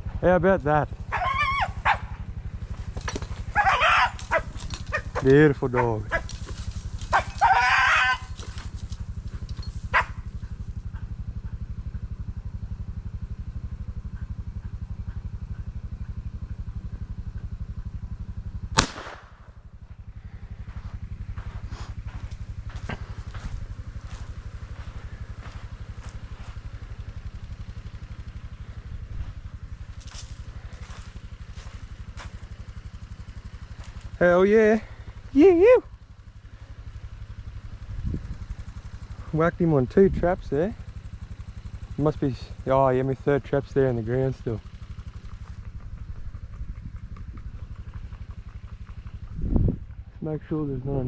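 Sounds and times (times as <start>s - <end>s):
vehicle engine idling: 0.0s - 51.0s
sharp crack: 18.7s - 19.6s.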